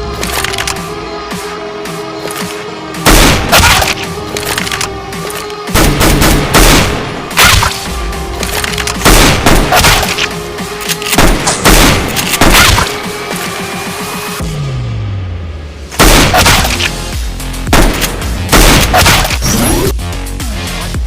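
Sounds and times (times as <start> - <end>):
background music: 0.0 - 21.0
gunshots in bursts: 3.0 - 4.9, 5.7 - 13.2, 16.0 - 19.6.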